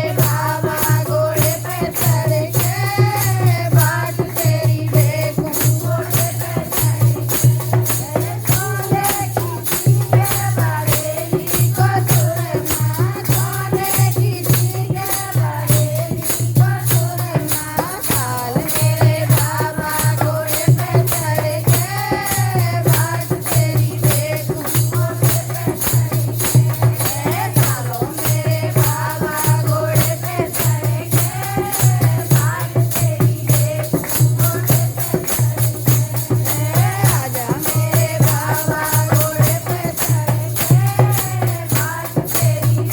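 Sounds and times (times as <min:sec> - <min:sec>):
fast percussion: 0:00.0 - 0:42.9
jingling tambourine and shakers: 0:00.0 - 0:42.9
solo sung vocal: 0:00.0 - 0:42.9.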